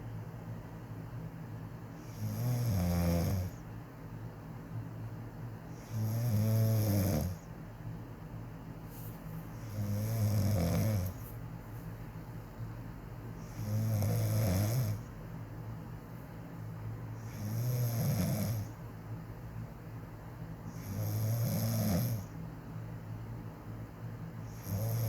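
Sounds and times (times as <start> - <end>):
woman snoring: 2.0 - 3.6, 5.8 - 7.4, 9.6 - 11.2, 13.4 - 15.1, 17.2 - 18.8, 20.7 - 22.3, 24.5 - 25.0.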